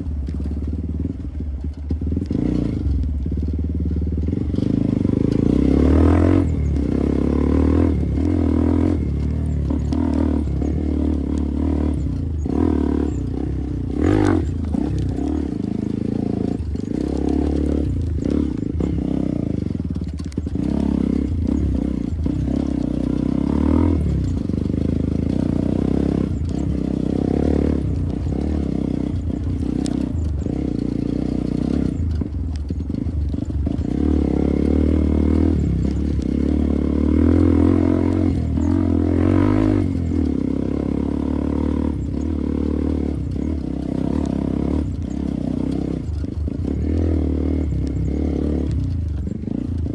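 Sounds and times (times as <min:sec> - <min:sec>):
motorcycle engine running: 0:00.0 - 0:49.9.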